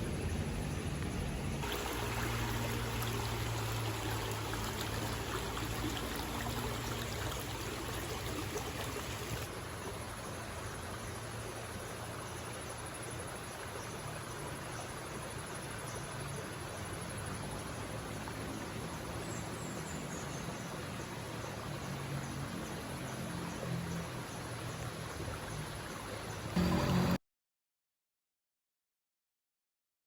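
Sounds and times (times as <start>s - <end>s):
river water rushing: 1.6s - 10.1s, 26.6s - 27.2s.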